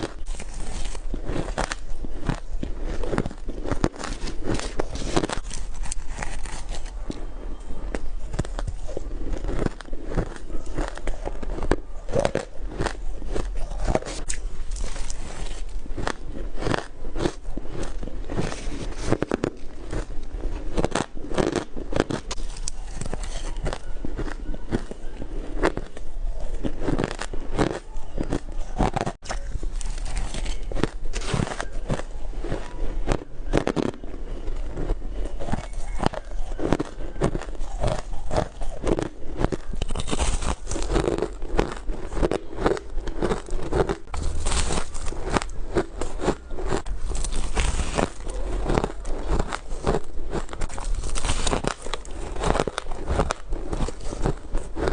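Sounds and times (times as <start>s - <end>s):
ice crunching between teeth: 0.0s - 54.9s.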